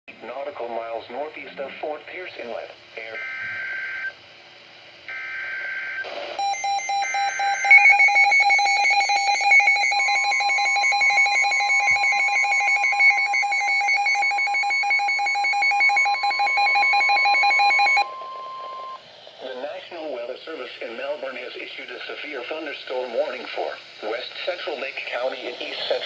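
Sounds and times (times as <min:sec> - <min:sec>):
pulsing electronic alarm beep: 0:05.8 - 0:19.0
buzzy digital data bursts: 0:06.4 - 0:18.0
steady warning tone: 0:06.4 - 0:19.0.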